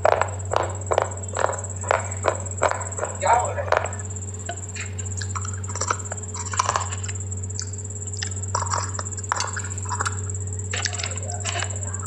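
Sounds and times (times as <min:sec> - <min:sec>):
crunchy chewing: 0:00.0 - 0:12.0
faint high whine: 0:00.0 - 0:12.0
low electrical hum: 0:00.0 - 0:12.0.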